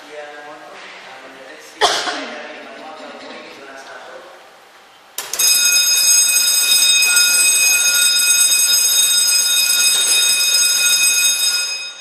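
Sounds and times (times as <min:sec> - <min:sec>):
fire alarm steady high tone: 0:05.4 - 0:12.0.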